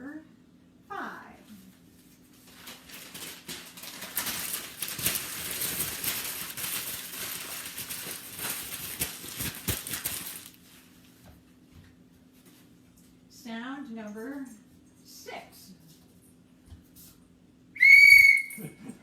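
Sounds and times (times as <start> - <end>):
newspaper being crumpled: 2.4 - 10.9.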